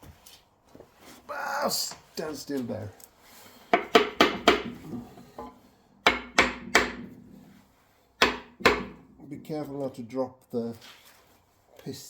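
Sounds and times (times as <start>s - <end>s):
hammer striking metal with ring: 8.2s - 9.0s.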